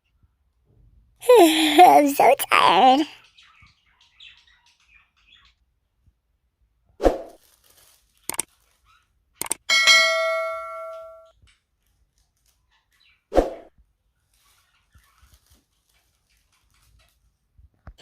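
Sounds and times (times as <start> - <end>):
sharp clicks: 9.4 - 9.7
ringing metallic clang: 9.7 - 11.3.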